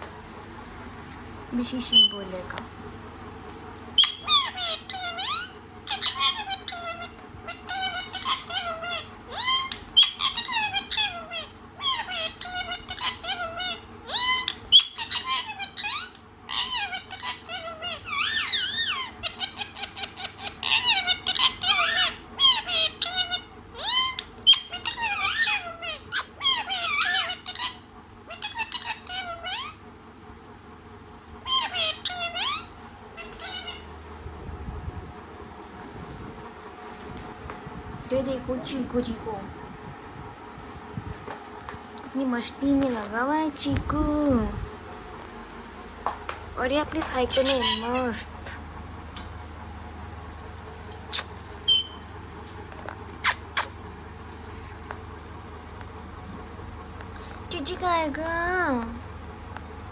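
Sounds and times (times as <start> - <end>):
parrot chattering: 4.0 - 29.8, 31.4 - 33.9, 46.7 - 48.6, 50.9 - 52.0, 53.2 - 53.8
low hum: 29.2 - 59.9.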